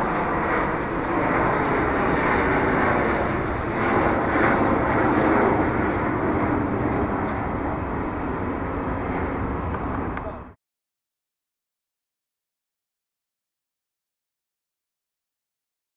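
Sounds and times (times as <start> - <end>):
jet airliner engines running: 0.0 - 10.6.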